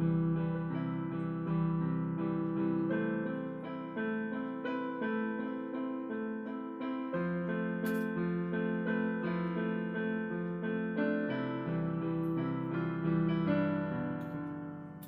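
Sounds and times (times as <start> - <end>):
piano melody: 0.0 - 15.0.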